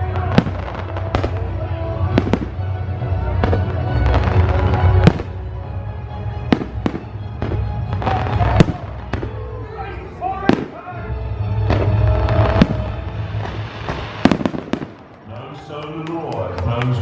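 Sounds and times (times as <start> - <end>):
fireworks bangs: 0.0 - 2.6, 3.2 - 5.4, 6.5 - 9.4, 10.4 - 10.9, 11.6 - 16.2
loud music: 0.0 - 14.8.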